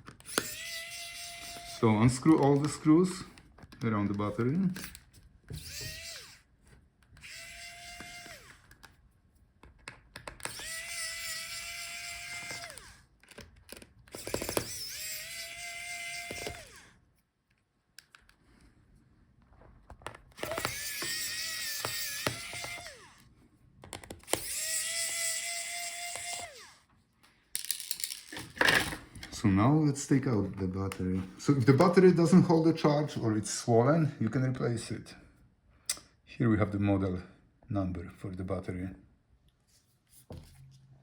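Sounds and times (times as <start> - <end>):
electric screwdriver whining: 0.0 - 3.3, 4.1 - 6.5, 7.1 - 8.9, 10.2 - 17.0, 20.3 - 23.3, 23.9 - 26.9.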